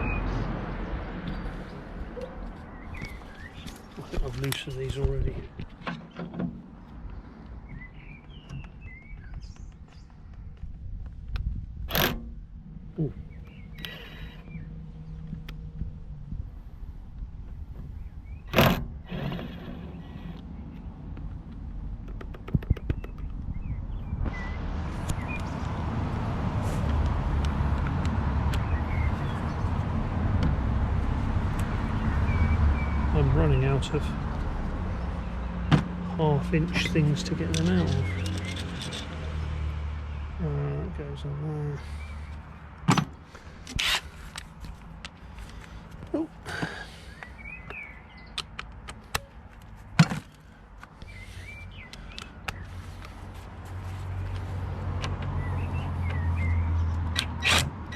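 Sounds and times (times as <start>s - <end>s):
bird chirps: 7.6s - 10.2s, 46.9s - 48.4s
steady low rumble: 8.8s - 19.0s
metal tools clinking: 36.8s - 39.1s.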